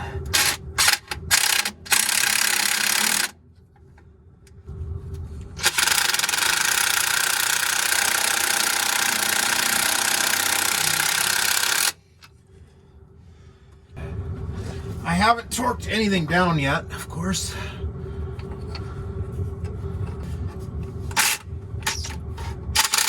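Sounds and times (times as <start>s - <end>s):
impact driver hammering: 5.6s - 12.0s.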